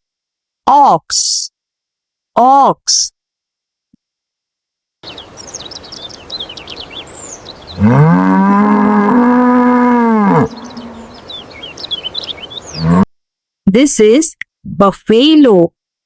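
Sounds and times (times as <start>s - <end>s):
small birds chirping: 5.0s - 13.0s
ox mooing: 7.7s - 11.2s, 12.7s - 13.1s.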